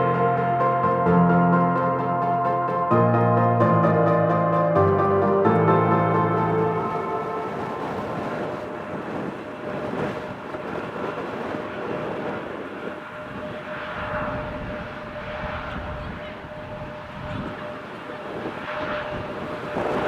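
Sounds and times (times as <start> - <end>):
jet engines rumbling: 0.0 - 20.0
wind on microphone: 4.3 - 20.0.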